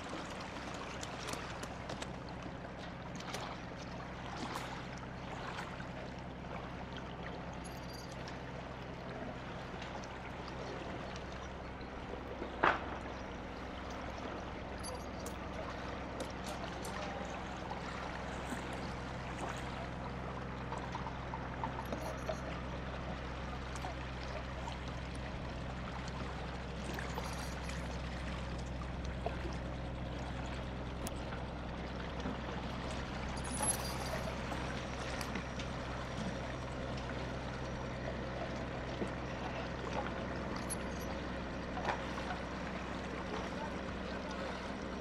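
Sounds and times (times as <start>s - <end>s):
engine humming: 6.1s - 45.0s
water pouring and trickling: 20.6s - 41.2s.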